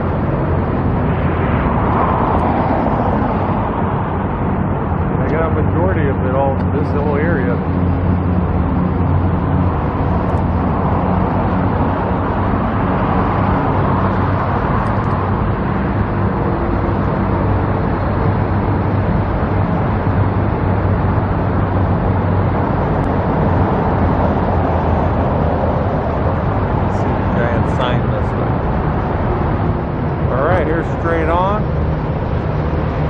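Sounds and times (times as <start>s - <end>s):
low engine hum: 0.0s - 33.0s
road traffic noise: 0.0s - 33.0s.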